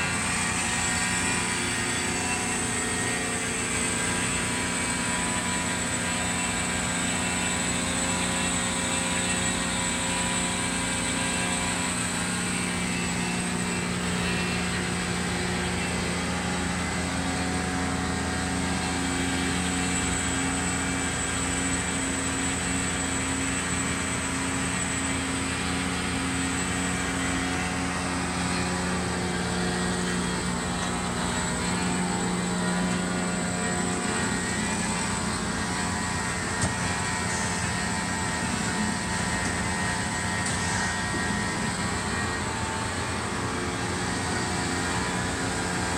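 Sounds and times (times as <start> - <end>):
bandsaw humming with high whine: 0.0 - 45.9.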